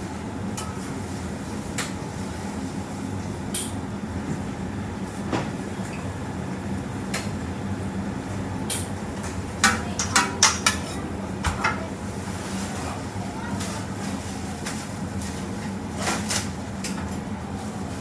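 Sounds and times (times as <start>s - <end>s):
utensils clinking against dishes: 8.7s - 17.2s.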